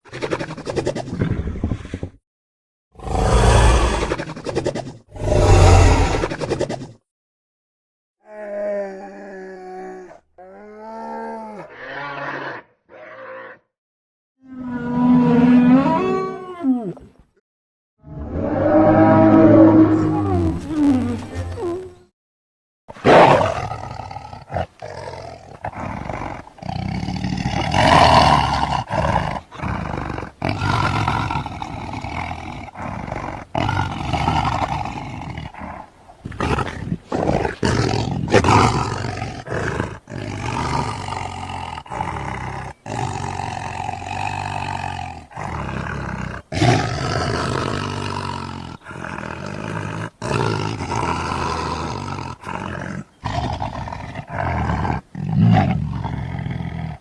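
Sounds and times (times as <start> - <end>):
cartoon dinosaur roars: 3.0 - 4.4, 5.1 - 6.4, 8.2 - 13.7, 14.4 - 17.0, 18.0 - 22.0.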